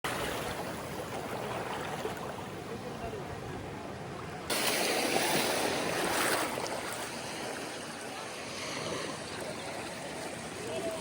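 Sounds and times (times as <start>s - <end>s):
ocean surf washing on beach: 4.5s - 11.0s.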